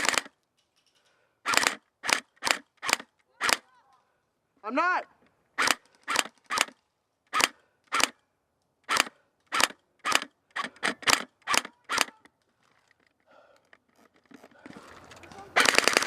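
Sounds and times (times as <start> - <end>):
airsoft rifle shots: 0.0 - 0.3, 1.4 - 3.7, 5.6 - 8.2, 8.8 - 12.3, 15.3 - 16.0.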